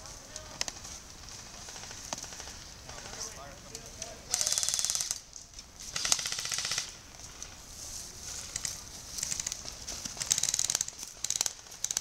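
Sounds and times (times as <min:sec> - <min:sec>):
airsoft guns firing: 0:04.3 - 0:05.2, 0:05.9 - 0:07.0.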